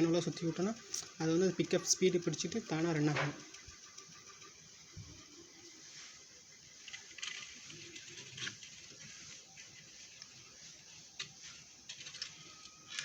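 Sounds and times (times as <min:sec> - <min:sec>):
handling rustle: 0:06.0 - 0:13.0.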